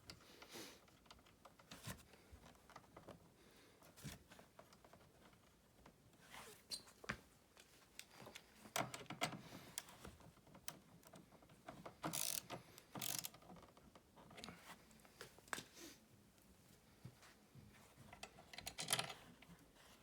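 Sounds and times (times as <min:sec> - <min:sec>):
metallic clicks and rattling: 0:11.9 - 0:13.7, 0:18.2 - 0:19.2.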